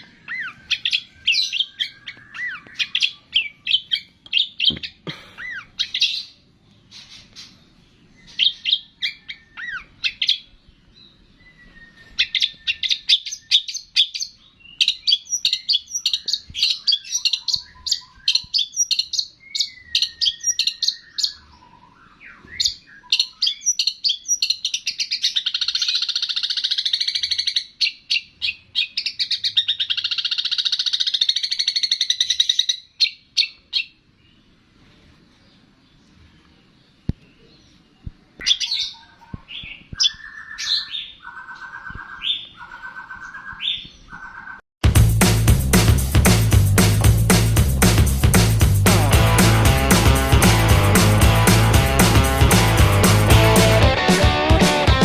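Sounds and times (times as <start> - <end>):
songbird chipping and whistling: 0.0 - 7.6, 8.2 - 34.0, 38.4 - 44.6.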